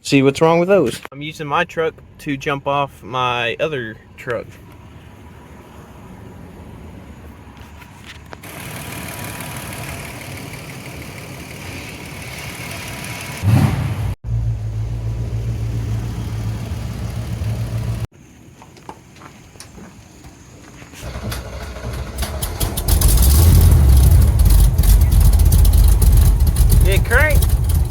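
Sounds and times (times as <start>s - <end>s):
truck engine cranking and starting: 8.4s - 18.1s, 21.0s - 27.9s.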